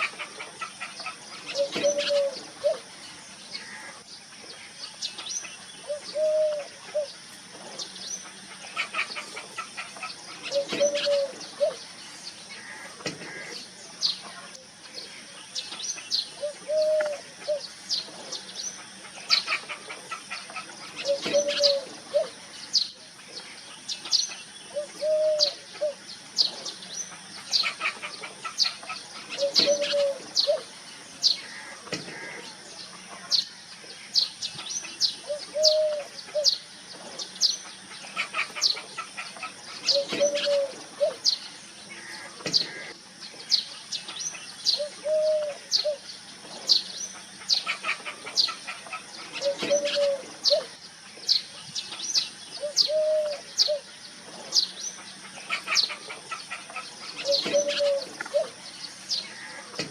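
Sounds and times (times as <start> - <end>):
dove cooing: 0.0 - 2.9, 5.8 - 7.8, 8.5 - 11.9, 16.4 - 18.2, 19.0 - 22.4, 24.7 - 26.7, 27.5 - 30.7, 35.2 - 36.6, 38.1 - 41.4, 44.8 - 46.0, 47.5 - 50.8, 52.6 - 53.9, 55.4 - 58.6
small birds chirping: 0.0 - 59.9.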